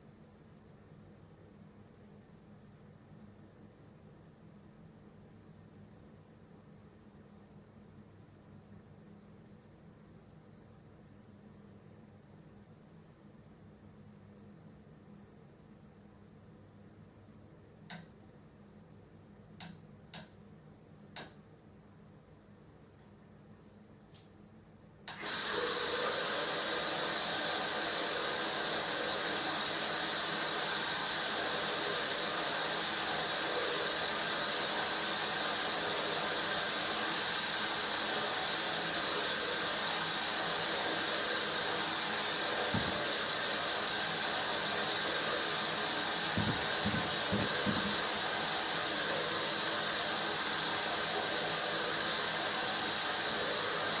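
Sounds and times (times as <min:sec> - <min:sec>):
loud steady hiss: 0:00.0 - 0:02.3, 0:25.0 - 0:54.0.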